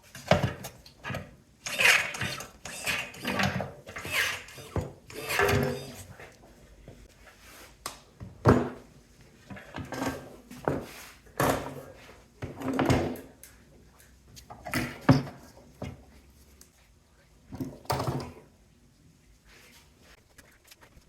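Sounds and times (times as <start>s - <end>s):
metal parts knocking and scraping: 1.0s - 6.0s.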